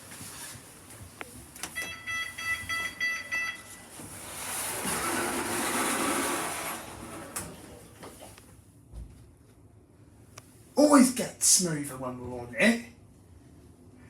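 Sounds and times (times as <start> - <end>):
lift machinery whirring: 3.9 - 7.9.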